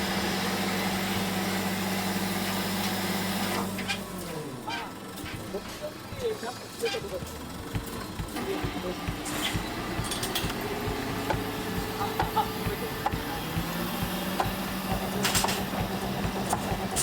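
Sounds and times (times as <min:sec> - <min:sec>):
engine running with low hum: 0:00.0 - 0:17.0
sharp knocks: 0:07.3 - 0:17.0.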